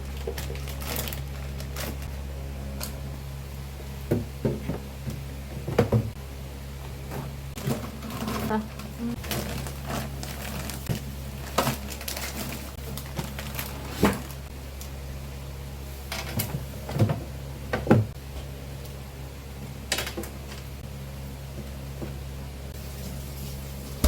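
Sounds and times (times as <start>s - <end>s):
refrigerator hum: 0.0s - 24.0s.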